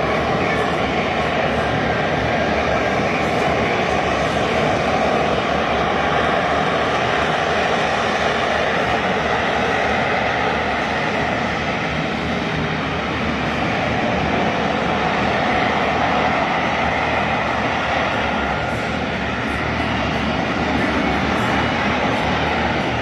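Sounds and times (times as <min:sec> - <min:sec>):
loud jet engine noise: 0:00.0 - 0:23.0.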